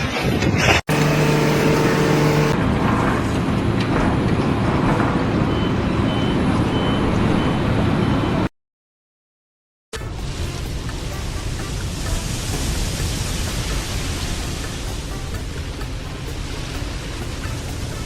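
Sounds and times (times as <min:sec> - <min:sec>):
steady pitched tone: 0:00.9 - 0:02.6
heavy engine rumbling: 0:00.9 - 0:08.5.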